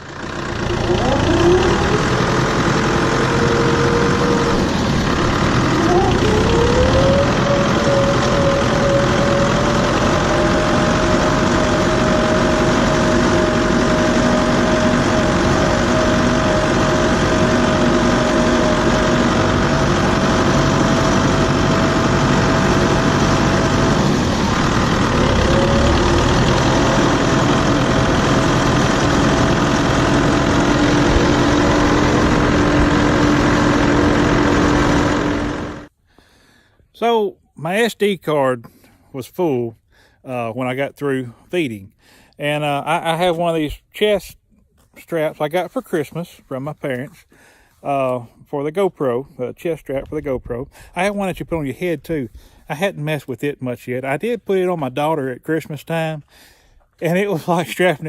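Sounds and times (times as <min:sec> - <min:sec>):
tractor engine running: 0:00.0 - 0:36.0.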